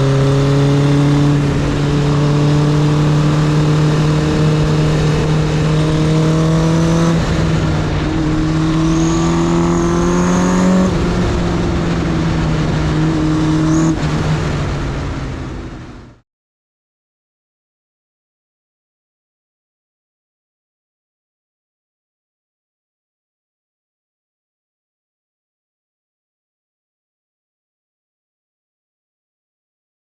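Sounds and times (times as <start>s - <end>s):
motorcycle engine shifting gears: 0.0s - 15.6s.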